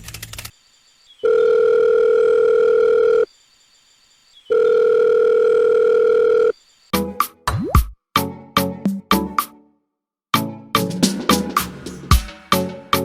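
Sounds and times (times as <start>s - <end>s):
telephone ringing tone beeps: 1.2s - 3.3s, 4.5s - 6.5s.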